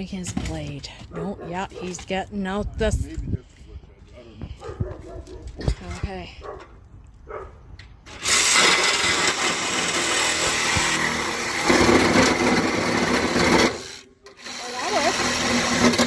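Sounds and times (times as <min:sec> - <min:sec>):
power saw cutting metal: 0:08.1 - 0:16.0.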